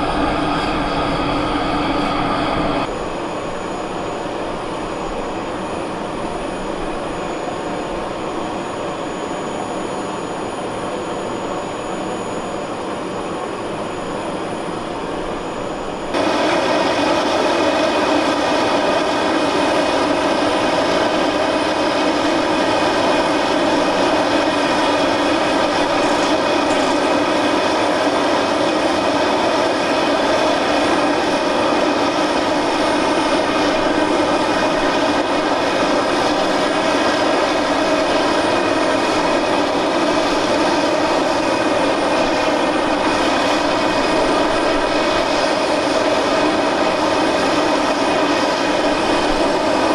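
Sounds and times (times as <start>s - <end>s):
aircraft turbine engine whine: 0.0s - 49.9s.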